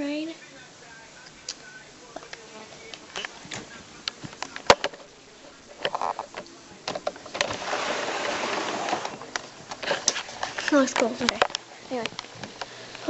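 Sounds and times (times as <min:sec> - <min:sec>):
scattered clicks and knocks: 0:03.2 - 0:05.1, 0:05.8 - 0:07.6
rain hiss: 0:06.5 - 0:13.0.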